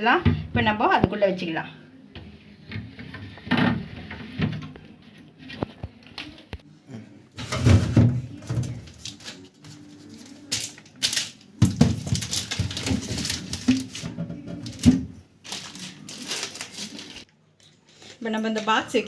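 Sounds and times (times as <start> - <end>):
plastic boxes knocking and clattering: 7.4 - 9.0, 11.6 - 15.2.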